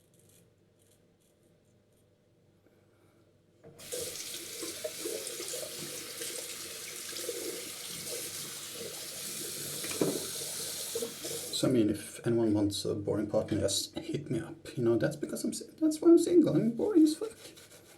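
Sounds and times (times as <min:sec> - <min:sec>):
tap running into sink: 0:03.7 - 0:11.6.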